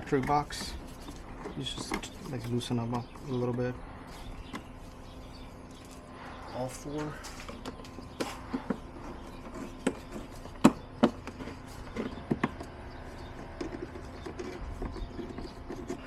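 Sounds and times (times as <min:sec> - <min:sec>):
plastic parts clicking and knocking: 0:00.0 - 0:03.2, 0:07.2 - 0:12.8.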